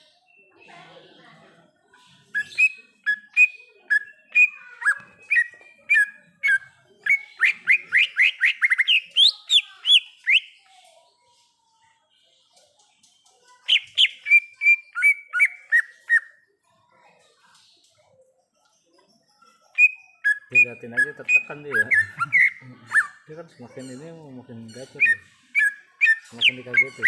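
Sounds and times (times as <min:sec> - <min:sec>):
bird whistling song: 0:02.2 - 0:10.7, 0:13.6 - 0:16.4, 0:19.7 - 0:23.2, 0:24.8 - 0:27.0.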